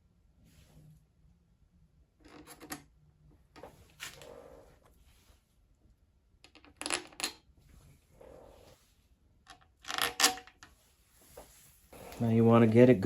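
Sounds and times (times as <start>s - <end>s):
soft handling noise: 3.4s - 5.8s, 10.5s - 13.0s.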